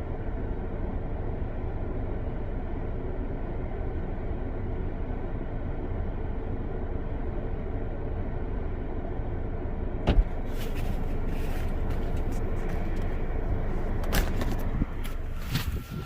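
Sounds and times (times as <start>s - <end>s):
car engine idling: 0.0s - 16.0s
car door clunking: 10.0s - 11.1s, 13.9s - 15.7s.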